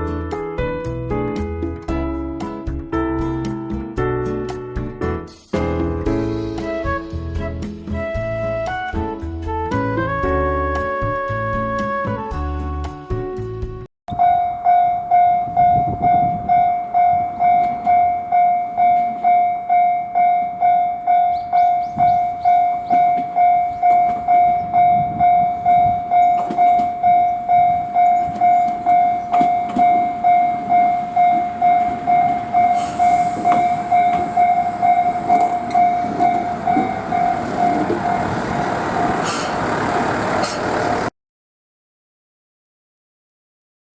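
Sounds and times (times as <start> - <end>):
level crossing warning bell: 14.1 - 41.1
train running: 14.1 - 41.1.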